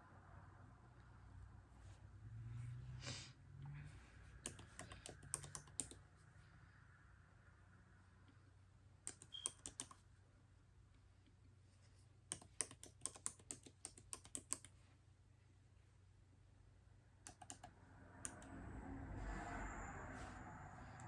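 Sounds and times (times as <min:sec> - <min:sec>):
laptop keyboard typing: 0:04.4 - 0:06.1, 0:09.0 - 0:10.0, 0:12.3 - 0:14.8, 0:17.2 - 0:18.5
soft hushed noise: 0:17.7 - 0:21.0.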